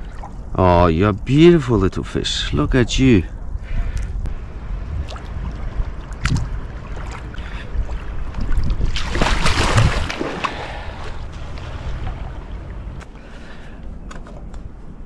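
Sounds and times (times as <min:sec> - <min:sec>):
wind buffeting microphone: 0:02.4 - 0:13.6
water splashing: 0:04.5 - 0:13.1.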